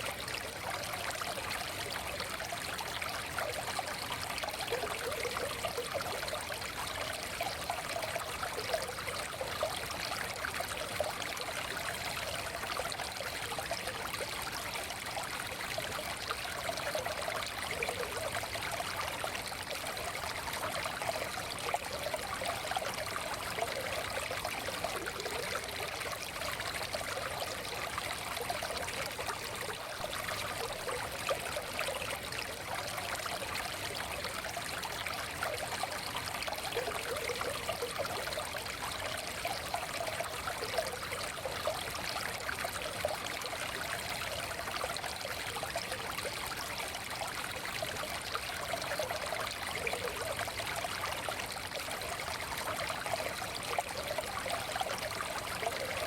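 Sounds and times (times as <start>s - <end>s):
stream babbling over stones: 0.0s - 56.0s.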